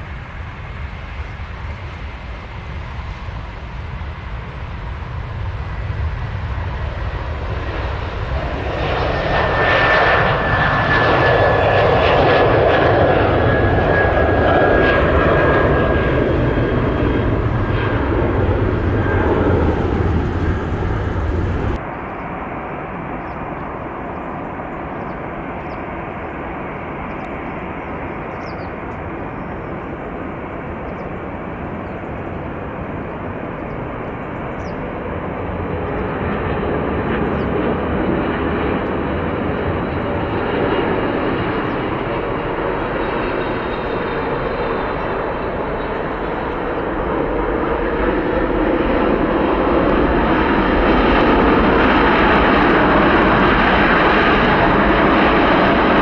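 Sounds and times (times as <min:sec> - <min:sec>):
jet engines with high whine: 0:00.0 - 0:56.0
steady engine rumble: 0:15.5 - 0:21.8.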